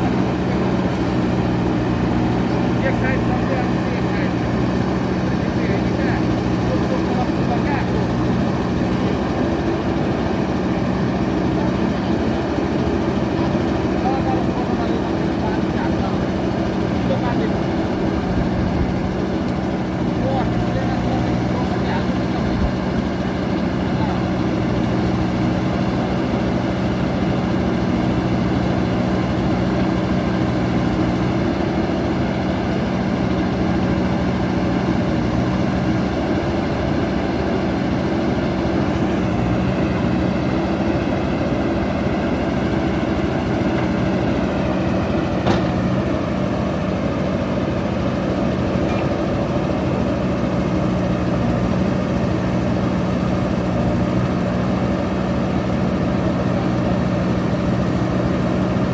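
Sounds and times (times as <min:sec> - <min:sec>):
diesel engine running: 0:00.0 - 0:58.9.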